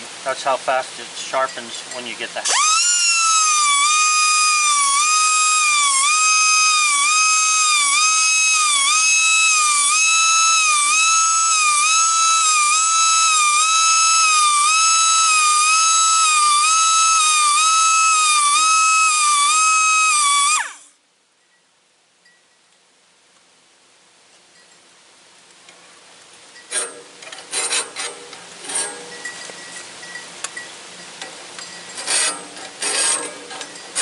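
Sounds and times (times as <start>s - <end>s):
saw blade sharpener grinding: 2.4s - 20.9s, 32.0s - 34.0s.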